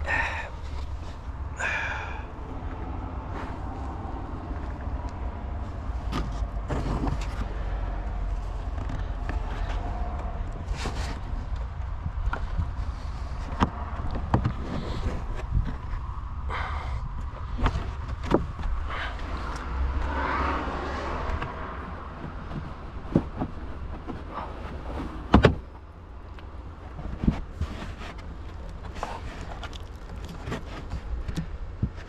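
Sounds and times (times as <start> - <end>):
clicks and knocks of parts: 25.2 - 32.0.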